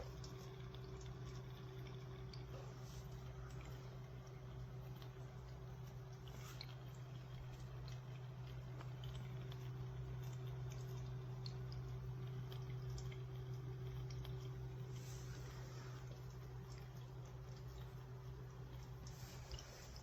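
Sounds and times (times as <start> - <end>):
fountain pump humming: 0.0 - 20.0
water dripping and splashing: 0.0 - 20.0.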